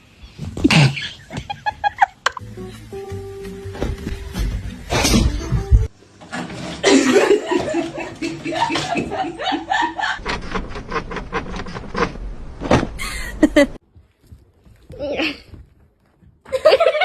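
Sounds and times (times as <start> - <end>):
person chuckling: 6.8 - 10.2, 13.0 - 13.8, 16.5 - 17.0.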